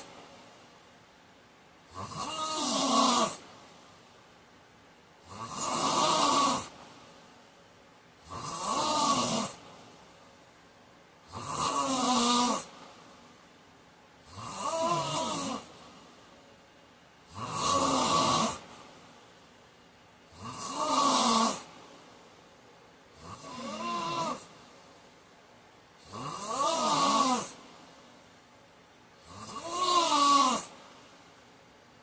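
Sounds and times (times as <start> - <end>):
quiet breathing: 0.0 - 25.2
man snoring: 1.9 - 3.4, 5.2 - 6.8, 8.2 - 9.7, 11.3 - 12.8, 14.2 - 15.7, 17.3 - 18.7, 20.3 - 21.7, 23.2 - 24.5, 26.0 - 27.6, 29.2 - 30.8.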